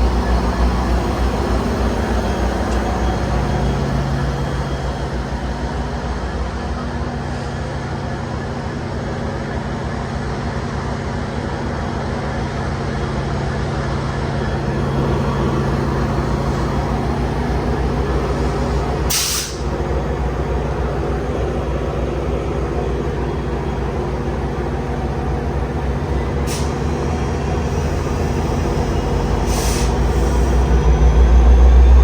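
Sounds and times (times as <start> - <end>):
freight train rumbling past: 0.0 - 32.0
short hisses: 19.1 - 19.7.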